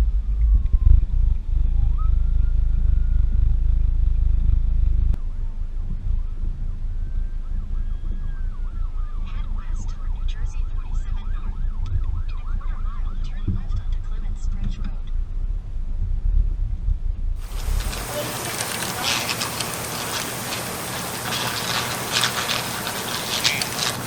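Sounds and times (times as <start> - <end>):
wind rumble on microphone: 0.0 - 10.9, 11.6 - 18.1.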